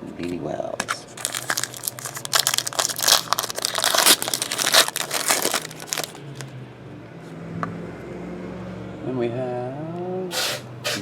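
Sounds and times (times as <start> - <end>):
wrapper crinkling and tearing: 0.8 - 6.5.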